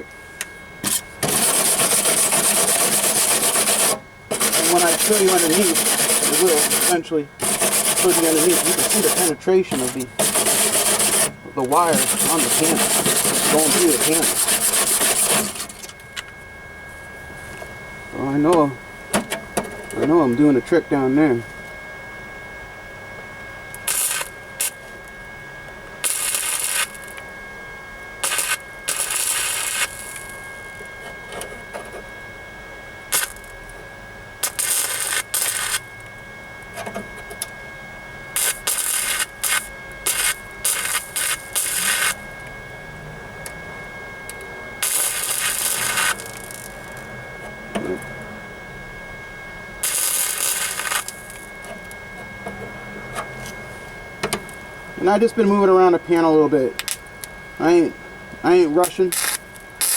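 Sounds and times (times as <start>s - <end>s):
faint steady whine: 0.0s - 59.9s
welder arc bursts: 0.8s - 15.9s, 23.8s - 24.8s, 26.0s - 27.2s, 28.2s - 30.5s, 33.1s - 33.5s, 34.4s - 35.8s, 38.4s - 42.2s, 44.8s - 47.1s, 49.8s - 51.5s, 58.5s - 59.9s.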